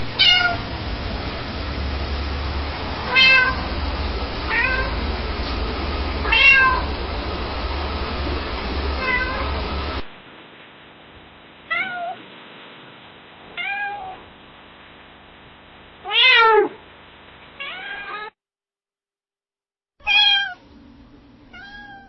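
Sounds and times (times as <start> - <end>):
steady low hum: 0.0 - 13.6, 14.2 - 16.1
cat meowing: 0.2 - 0.6, 3.1 - 3.6, 4.5 - 5.0, 6.2 - 6.9, 9.0 - 9.6, 11.7 - 12.2, 13.5 - 14.2, 16.0 - 16.8, 17.6 - 18.4, 20.0 - 20.6, 21.5 - 22.0.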